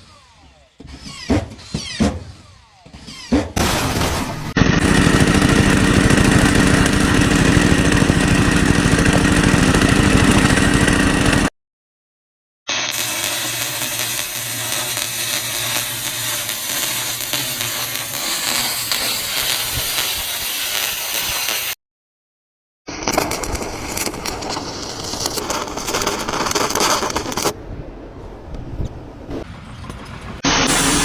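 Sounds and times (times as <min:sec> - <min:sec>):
machinery hiss and hum: 0:13.0 - 0:21.6, 0:30.6 - 0:31.0.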